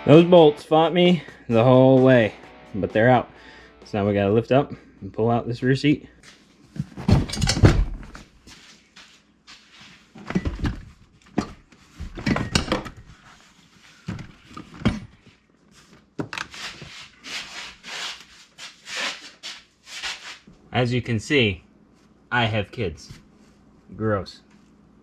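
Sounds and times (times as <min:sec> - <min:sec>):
rubbing and scraping: 0:15.7 - 0:20.5.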